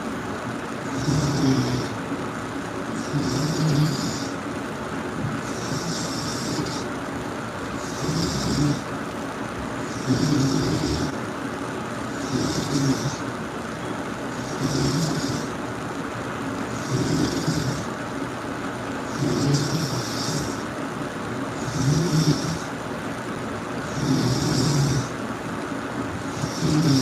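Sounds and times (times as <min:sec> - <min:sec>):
person snoring loudly: 0:00.8 - 0:02.0, 0:03.0 - 0:04.4, 0:05.3 - 0:07.0, 0:07.7 - 0:08.9, 0:09.8 - 0:11.2, 0:12.1 - 0:13.3, 0:14.3 - 0:15.6, 0:16.7 - 0:18.0, 0:19.0 - 0:20.7, 0:21.5 - 0:22.8, 0:23.8 - 0:25.2, 0:26.2 - 0:27.0.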